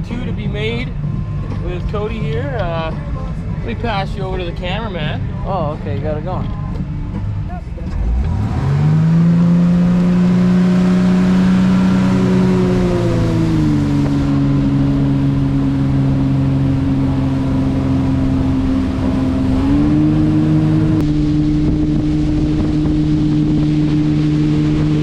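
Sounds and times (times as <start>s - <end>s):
motorboat engine running: 0.0s - 25.0s
wind buffeting microphone: 8.3s - 25.0s.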